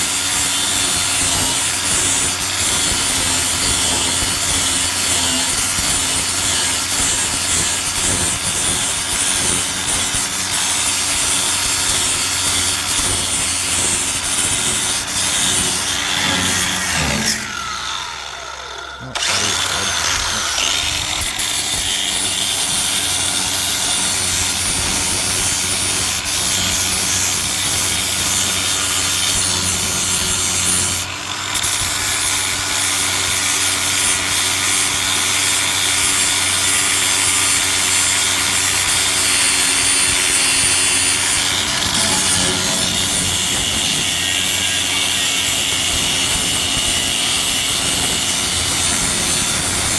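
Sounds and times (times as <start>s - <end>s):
power grinder grinding metal: 0.0s - 49.9s.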